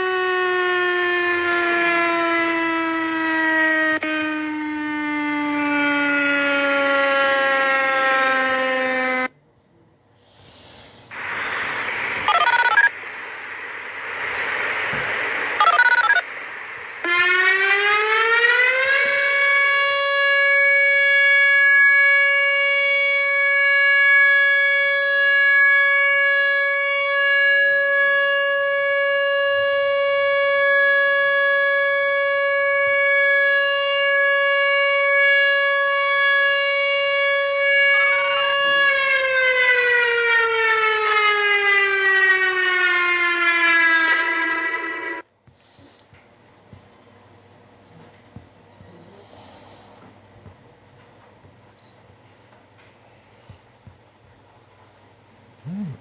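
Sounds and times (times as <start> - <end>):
siren winding down: 0.0 - 9.3, 11.1 - 45.3, 55.6 - 56.0
tornado warning siren: 0.0 - 9.4, 11.1 - 45.4, 55.6 - 56.0
siren winding up: 11.6 - 13.0, 15.4 - 16.3, 17.0 - 45.2, 55.6 - 56.0
faint wavering tone: 55.6 - 56.0.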